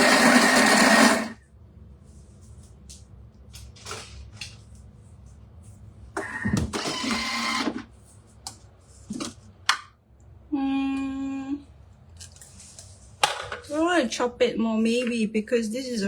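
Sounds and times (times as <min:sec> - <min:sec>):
food processor blade whirring: 0:00.0 - 0:01.4, 0:06.8 - 0:07.8.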